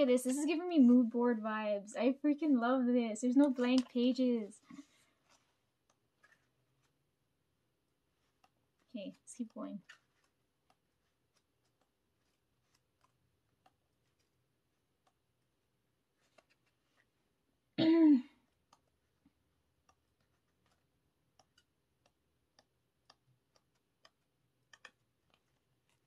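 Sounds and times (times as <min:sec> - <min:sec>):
paper clicks: 0:08.2 - 0:17.2, 0:18.5 - 0:26.0
woman clearing throat: 0:17.8 - 0:18.4.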